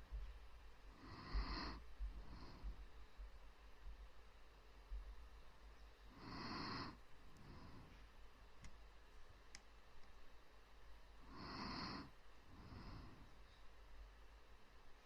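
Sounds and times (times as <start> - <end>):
soft close breathing: 0.9 - 3.2, 6.0 - 8.2, 11.2 - 13.8.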